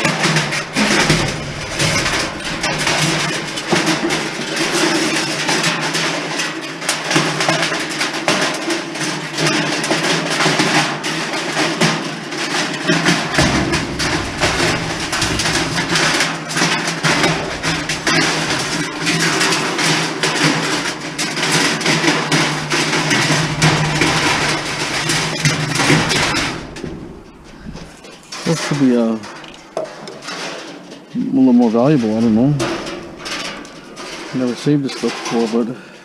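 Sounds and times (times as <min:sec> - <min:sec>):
clicks and knocks: 0:00.0 - 0:08.4, 0:12.8 - 0:31.0, 0:31.9 - 0:34.5
deep bass: 0:00.4 - 0:05.4, 0:13.2 - 0:20.9, 0:22.3 - 0:28.3.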